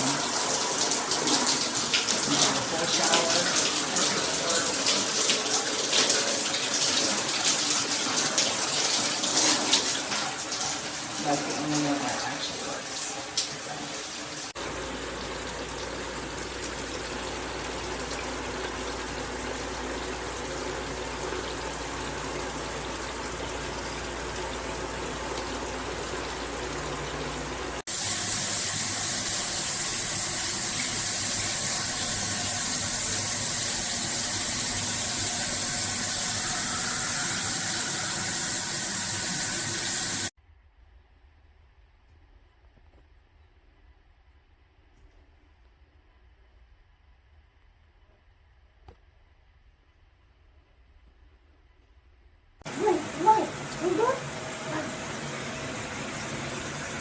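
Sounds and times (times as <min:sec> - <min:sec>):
shower water spraying: 0:00.0 - 0:40.4, 0:52.7 - 0:57.0.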